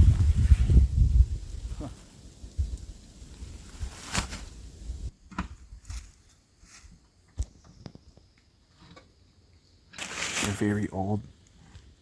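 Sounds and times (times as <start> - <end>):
wind noise on microphone: 0.0 - 6.0.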